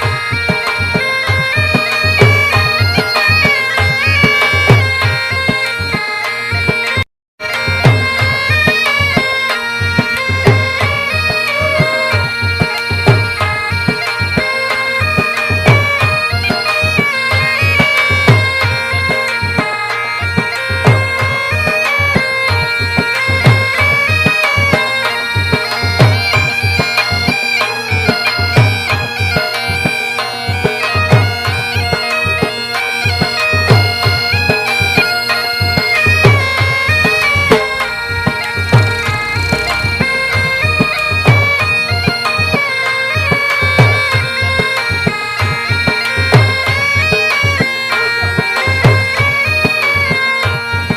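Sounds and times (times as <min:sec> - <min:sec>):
melody over drone: 0:06.2 - 0:20.0, 0:32.2 - 0:49.3
low drum beat: 0:36.2 - 0:42.0.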